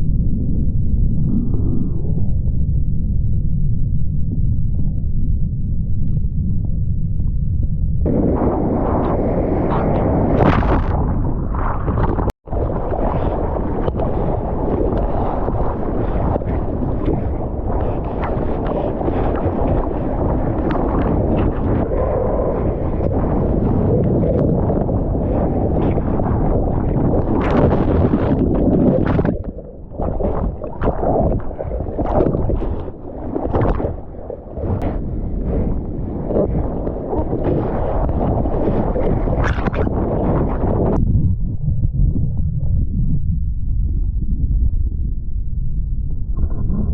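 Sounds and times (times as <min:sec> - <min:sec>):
wind rushing: 0:00.0 - 0:45.3
ocean water rushing: 0:11.8 - 0:40.9
water rushing and splashing: 0:24.4 - 0:34.9.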